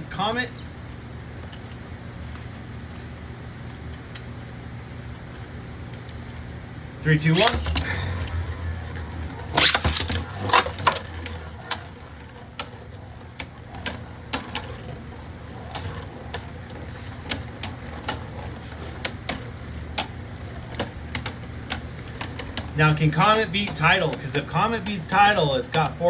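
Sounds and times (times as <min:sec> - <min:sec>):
spinning tops clashing: 0:07.2 - 0:26.0.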